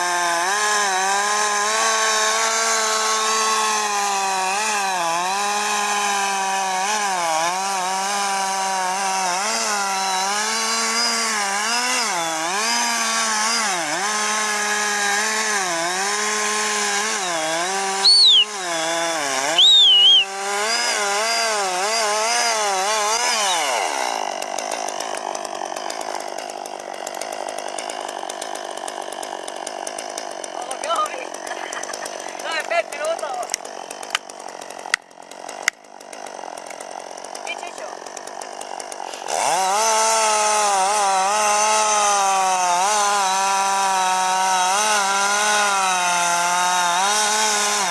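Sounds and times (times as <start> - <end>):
chainsaw cutting a tree: 0.0 - 47.9
short loud high-pitched sounds: 18.0 - 18.5, 19.6 - 20.3.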